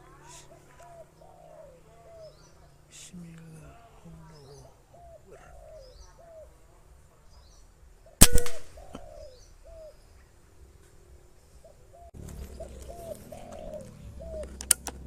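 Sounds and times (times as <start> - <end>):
doves cooing: 0.0 - 15.0
small birds chirping: 0.0 - 15.0
air rifle shot: 8.2 - 9.2.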